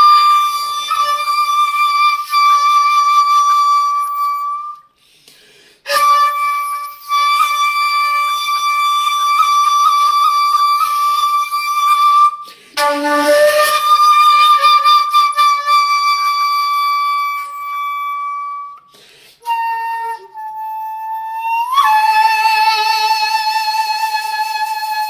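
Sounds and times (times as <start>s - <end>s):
shakuhachi long notes: 0.0s - 5.0s, 5.8s - 25.0s.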